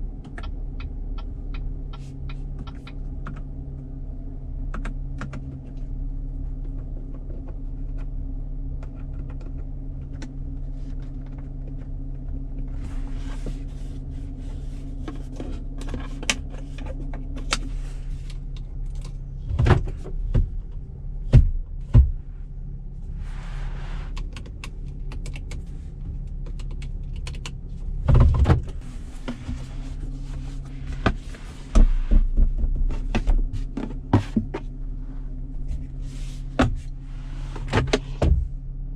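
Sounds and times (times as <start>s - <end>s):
low engine hum: 0.0s - 38.9s
heavy thumps and clunks: 19.4s - 22.3s, 27.4s - 38.5s.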